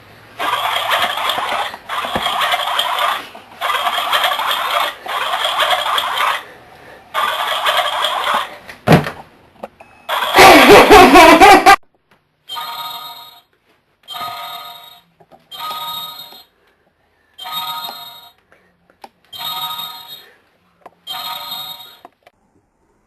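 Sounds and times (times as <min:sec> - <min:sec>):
electronic ringing tone: 0:21.1 - 0:22.0.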